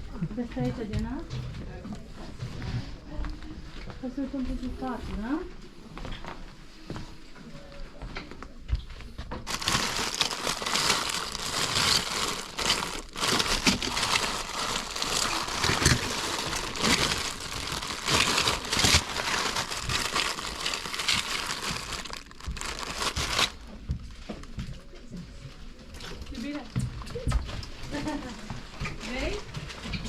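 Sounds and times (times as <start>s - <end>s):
crinkly material rustling: 9.0s - 30.0s.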